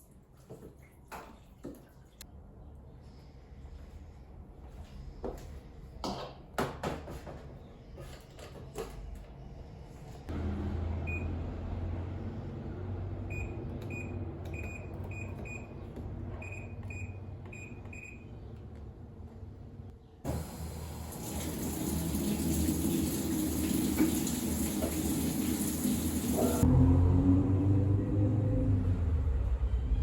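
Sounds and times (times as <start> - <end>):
washing machine humming: 10.3 - 12.2, 13.2 - 19.1, 20.2 - 26.7.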